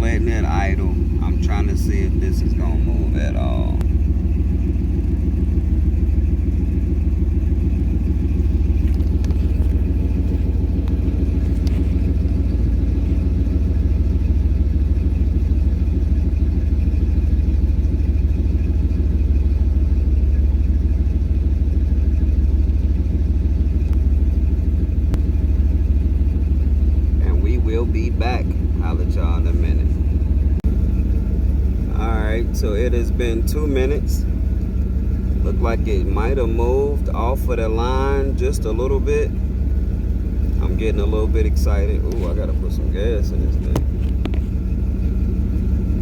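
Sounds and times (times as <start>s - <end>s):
car engine idling: 0.0s - 46.0s.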